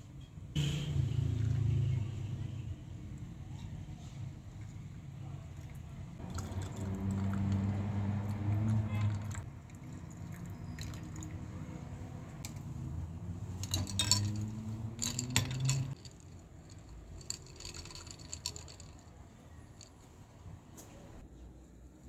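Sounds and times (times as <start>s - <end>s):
liquid pouring into a glass: 5.6s - 11.6s.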